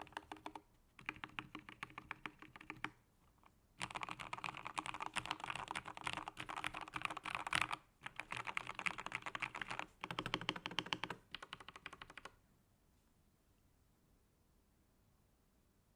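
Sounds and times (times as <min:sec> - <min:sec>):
rapid keyboard typing: 0:00.0 - 0:03.0, 0:03.8 - 0:12.3.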